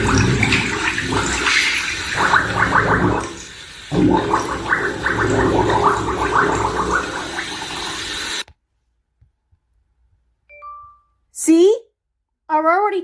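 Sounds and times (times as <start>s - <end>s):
farts bubbling through bathwater: 0.0s - 8.4s.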